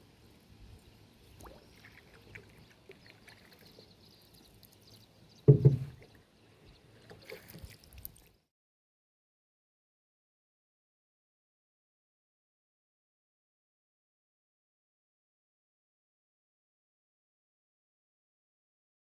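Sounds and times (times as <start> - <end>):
water and hull noise: 0.0 - 8.5
light knocks: 5.5 - 6.0
low double thump: 5.5 - 6.0.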